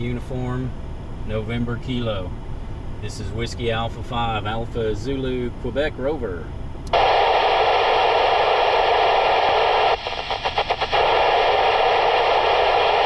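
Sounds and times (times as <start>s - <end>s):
radio receiver static hiss: 6.9s - 13.0s.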